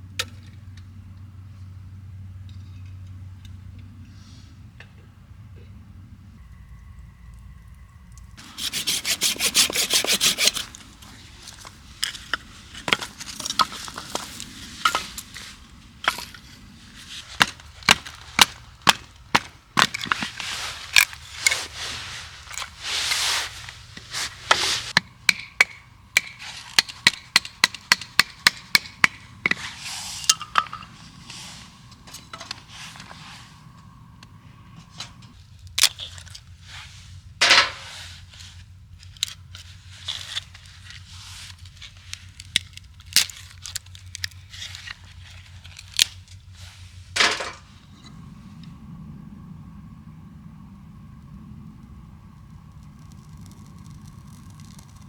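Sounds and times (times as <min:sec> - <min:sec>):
rasping strokes on firewood: 0:08.4 - 0:33.6, 0:52.4 - 0:55.0
sharp wooden cracks and knocks: 0:17.4 - 0:20.4.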